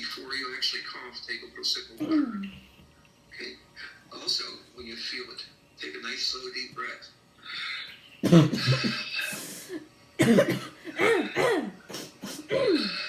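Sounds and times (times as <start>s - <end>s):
child coughing: 2.0s - 2.4s, 8.2s - 9.0s, 10.2s - 13.0s.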